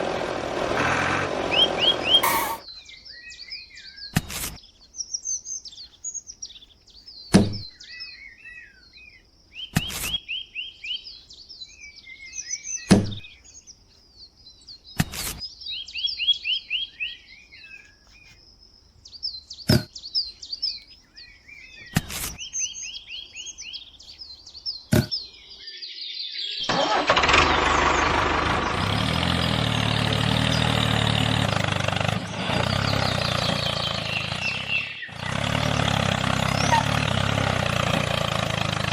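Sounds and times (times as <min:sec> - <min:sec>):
small engine running: 0:00.0 - 0:02.6, 0:26.7 - 0:38.9
birds chirping and trilling: 0:00.2 - 0:38.9.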